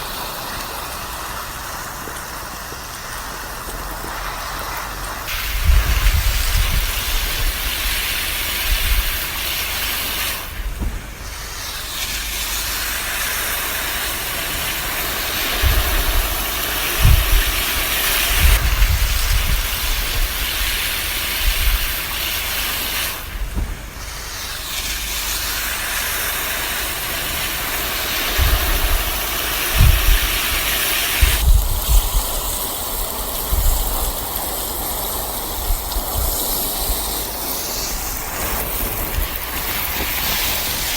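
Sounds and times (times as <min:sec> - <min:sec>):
hose spraying water on plants: 0:00.0 - 0:40.9
low rumbles: 0:23.2 - 0:25.8.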